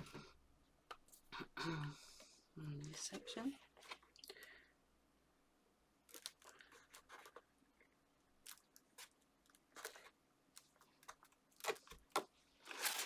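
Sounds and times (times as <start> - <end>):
paper crinkling: 6.1 - 7.5, 8.4 - 13.0.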